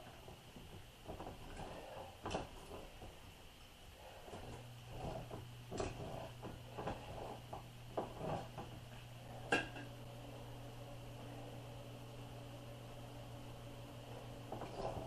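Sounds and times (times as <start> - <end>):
low hum: 4.0 - 15.0.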